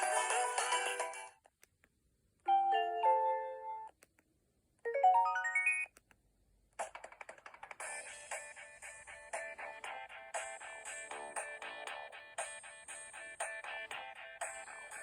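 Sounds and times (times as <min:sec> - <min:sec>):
phone ringtones: 0:04.9 - 0:05.9.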